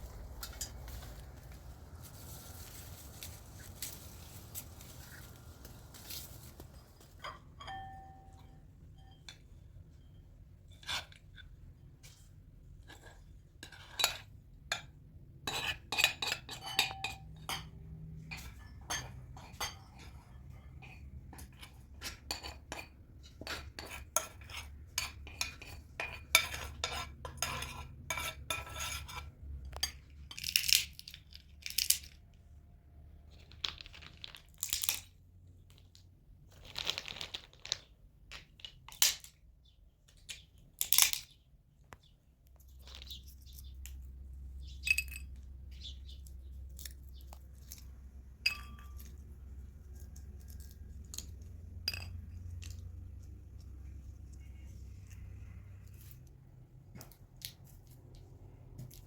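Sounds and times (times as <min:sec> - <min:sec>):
scraping sounds: 0:00.0 - 0:07.8
low steady hum: 0:00.0 - 0:30.4
dishes and utensils clinking: 0:06.7 - 0:09.5, 0:15.5 - 0:30.5, 0:48.4 - 0:49.2.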